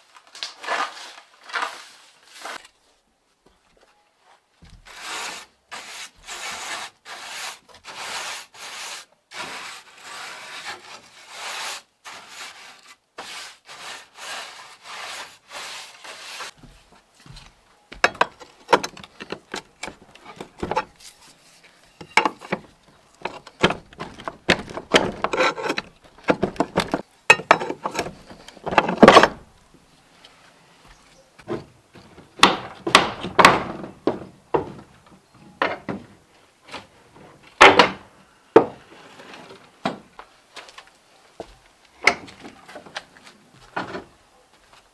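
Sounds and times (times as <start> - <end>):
timber knocking and scraping: 4.6 - 8.1, 12.1 - 29.5, 30.9 - 44.2.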